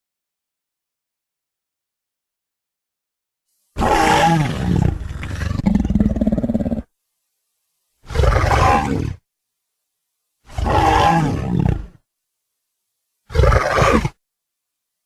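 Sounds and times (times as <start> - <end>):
monster roar: 3.8 - 6.8, 10.5 - 11.9.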